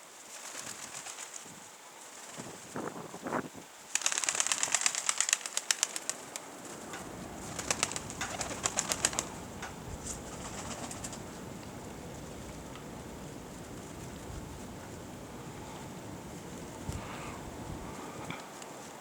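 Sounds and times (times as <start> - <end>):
pigeon wing beats: 3.9 - 18.4
pigeon calls: 4.0 - 18.2.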